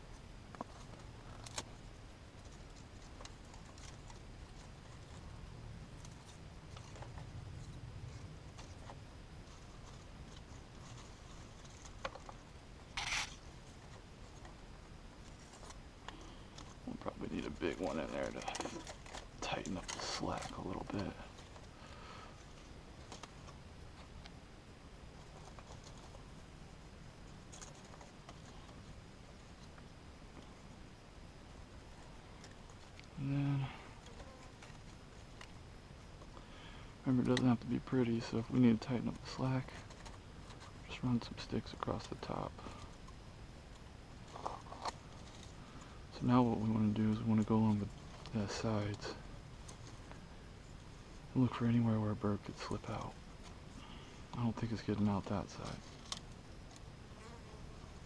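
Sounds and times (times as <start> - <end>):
dry sticks clicking and scraping: 0.5 - 14.6, 15.2 - 24.4, 27.2 - 29.0, 37.1 - 50.8, 52.4 - 56.9.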